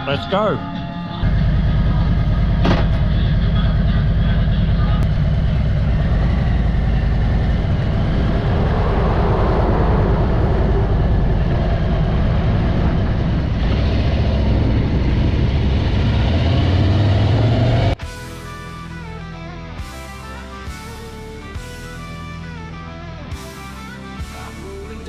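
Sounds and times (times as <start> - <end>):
motorcycle engine revving: 1.2 - 18.1
guitar music: 18.0 - 25.0.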